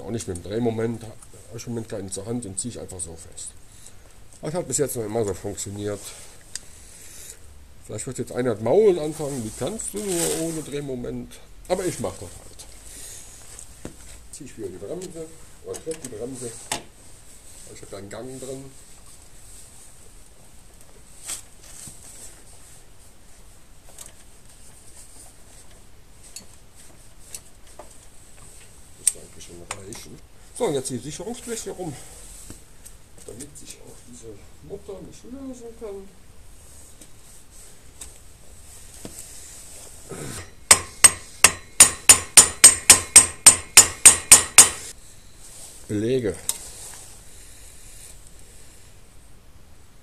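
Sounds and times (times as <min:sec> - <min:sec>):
hammer tapping metal: 0:40.4 - 0:44.9
wrench clicking on metal nut: 0:40.7 - 0:44.9.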